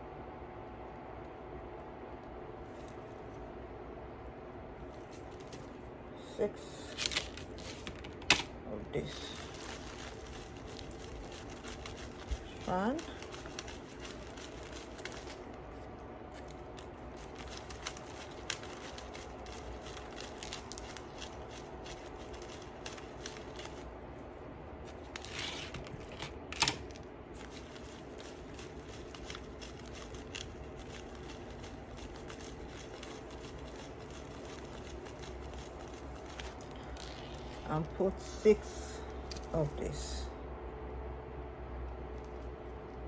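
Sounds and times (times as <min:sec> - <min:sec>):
steady low hum: 0:00.0 - 0:43.0
beads clicking and rustling: 0:06.7 - 0:24.0, 0:24.8 - 0:37.9.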